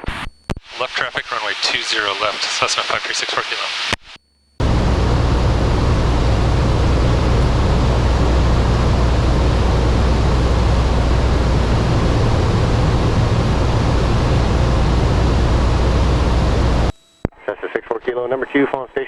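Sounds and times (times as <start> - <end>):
air rushing: 4.6 - 16.9
airplane engine drone: 4.6 - 16.9.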